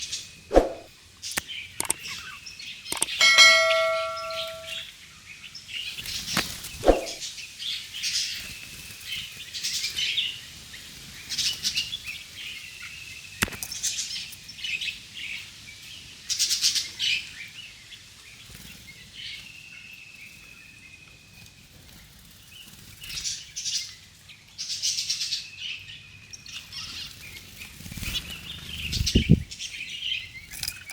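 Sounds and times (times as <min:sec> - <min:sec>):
small birds chirping: 0:00.0 - 0:04.9, 0:05.8 - 0:30.9
bell-like ding: 0:03.0 - 0:04.8.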